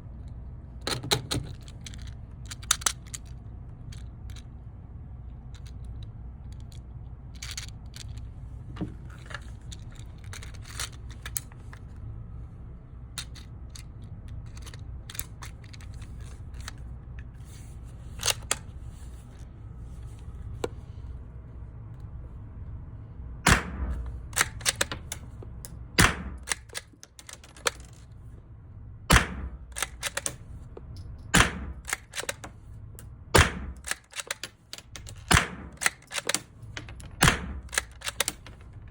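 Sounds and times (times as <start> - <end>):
clicks of rifle being handled: 0.2 - 4.5, 8.8 - 11.9, 13.2 - 19.4, 23.9 - 25.8, 26.4 - 28.1, 29.7 - 31.2, 31.8 - 32.6, 33.8 - 38.9
metallic clicks of rifle action: 0.2 - 4.5, 13.2 - 17.2, 18.2 - 18.7, 23.8 - 28.1, 29.1 - 32.6, 33.7 - 38.9
rifle shots: 23.5 - 24.7, 26.0 - 26.6, 29.1 - 30.2, 31.3 - 32.0, 33.4 - 34.0, 35.2 - 36.3, 37.2 - 38.2.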